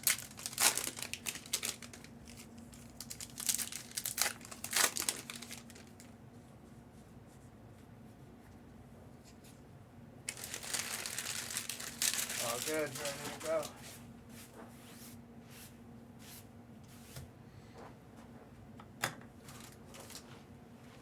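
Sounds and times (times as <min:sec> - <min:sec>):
foil wrappers crinkling and tearing: 0:00.0 - 0:06.2, 0:10.3 - 0:13.8, 0:19.5 - 0:20.3.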